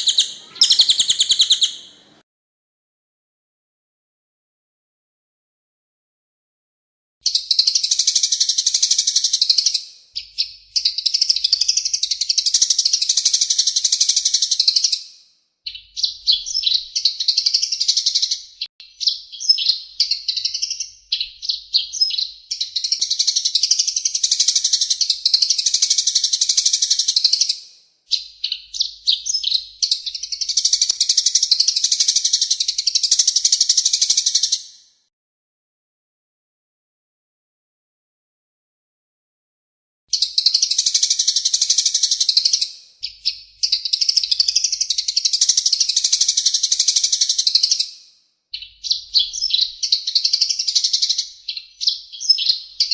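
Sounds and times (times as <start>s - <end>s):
songbird singing: 0.0s - 2.2s, 7.2s - 15.0s, 15.7s - 34.7s, 48.5s - 52.9s.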